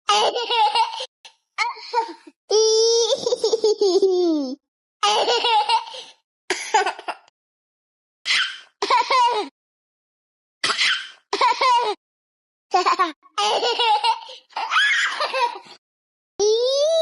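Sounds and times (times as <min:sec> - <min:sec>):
baby giggling: 0:00.1 - 0:02.2, 0:02.8 - 0:06.0, 0:12.8 - 0:15.6
baby squealing: 0:10.7 - 0:11.2, 0:14.6 - 0:15.4.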